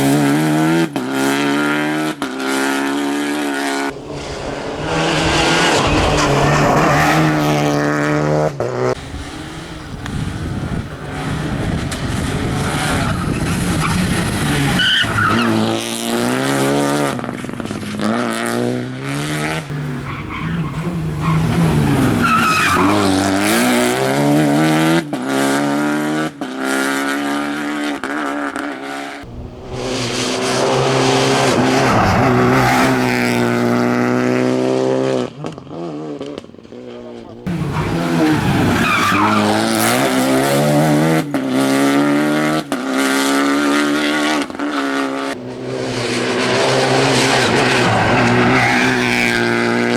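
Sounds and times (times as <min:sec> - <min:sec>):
rally car engines revving: 0:00.0 - 0:49.9
tyres squealing: 0:19.7 - 0:23.8, 0:37.5 - 0:40.3.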